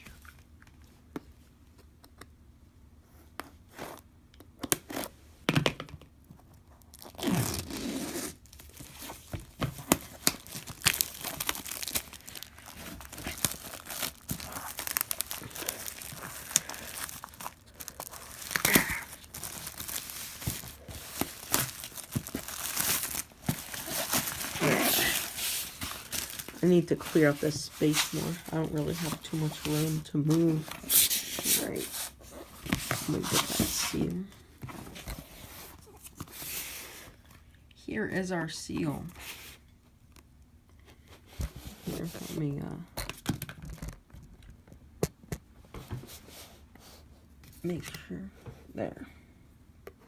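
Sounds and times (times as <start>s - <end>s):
packaging tearing and crinkling: 6.8s - 30.0s.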